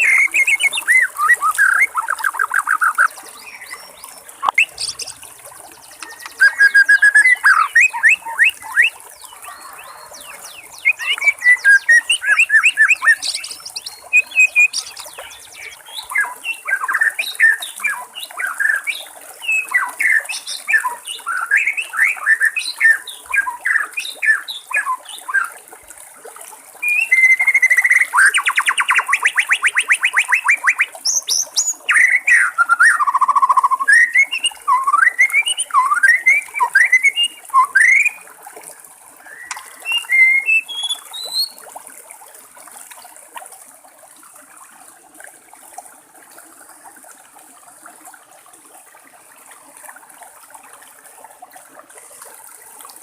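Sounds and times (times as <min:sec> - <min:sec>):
bird singing whistled phrases: 0:00.0 - 0:05.2, 0:06.0 - 0:25.5, 0:26.8 - 0:38.2, 0:39.2 - 0:41.6
water trickling: 0:00.0 - 0:53.0.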